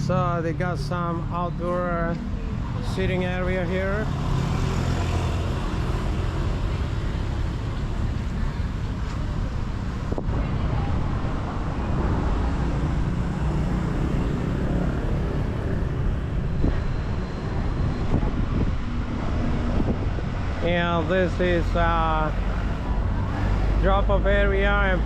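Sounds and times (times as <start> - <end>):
road traffic noise: 0.0 - 25.0
wind buffeting microphone: 9.3 - 21.2.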